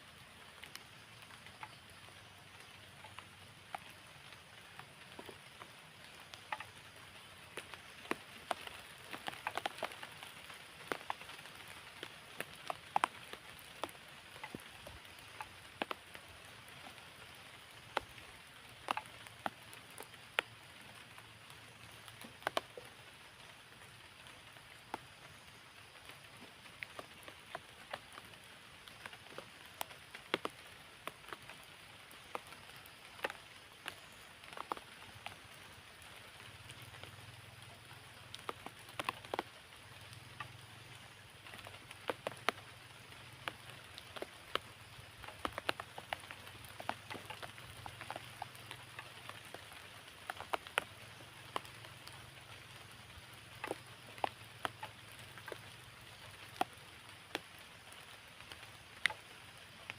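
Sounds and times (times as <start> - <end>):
rain hissing: 0.0 - 59.9.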